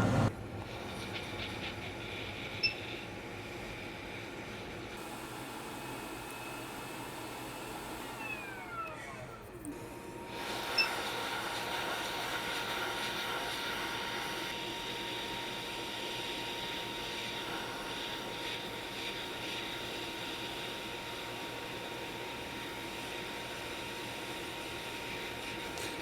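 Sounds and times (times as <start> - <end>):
hot air blower rushing: 0.0 - 1.2, 10.2 - 15.0.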